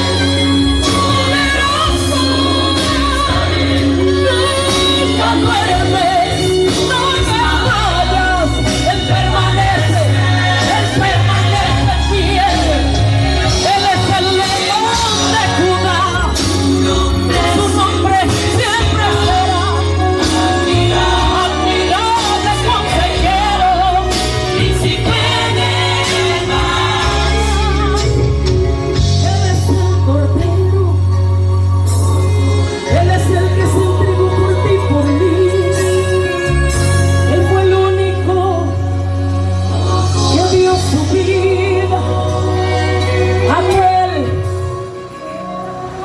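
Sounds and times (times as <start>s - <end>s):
person singing: 0.0s - 46.0s
steady bass accompaniment: 0.0s - 46.0s.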